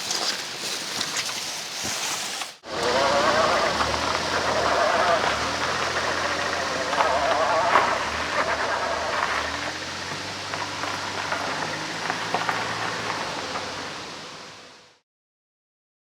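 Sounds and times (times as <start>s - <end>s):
mountain stream rushing: 2.6s - 15.0s.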